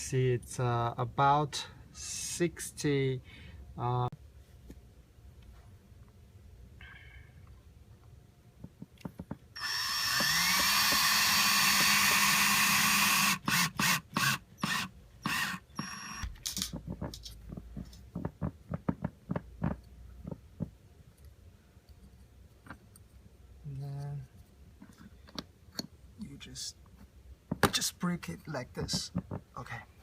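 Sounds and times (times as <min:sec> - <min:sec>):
power drill driving screw: 0:09.6 - 0:16.3
light clicks and knocks: 0:28.8 - 0:29.7.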